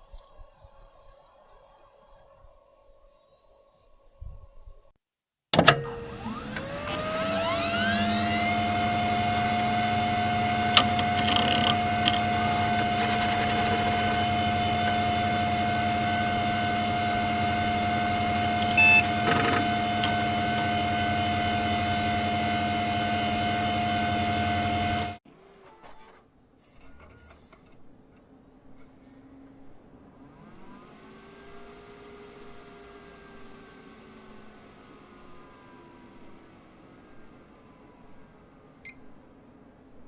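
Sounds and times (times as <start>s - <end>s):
clicks: 5.6s - 7.1s, 9.2s - 21.0s
computer fans and hard drive humming: 5.6s - 25.6s, 28.4s - 40.0s
short computer beep: 18.7s - 19.2s, 38.8s - 39.2s.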